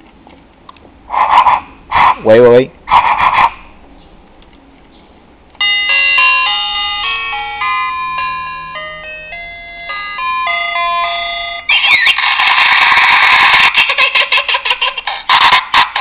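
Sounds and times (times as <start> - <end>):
harsh crackling sound effect: 1.1 - 3.8, 11.7 - 13.8, 15.0 - 16.0
toy beeping electronic tune: 5.6 - 14.2.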